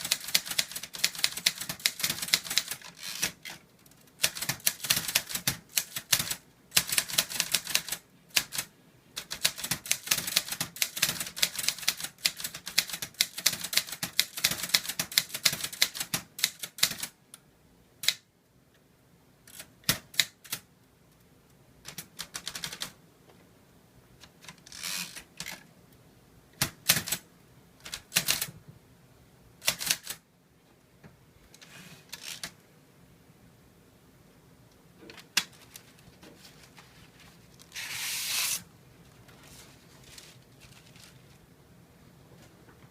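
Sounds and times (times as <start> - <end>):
typewriter ratcheting: 0.0 - 17.1, 24.4 - 25.6, 26.6 - 27.2, 27.8 - 28.5, 29.6 - 30.2, 32.1 - 32.6.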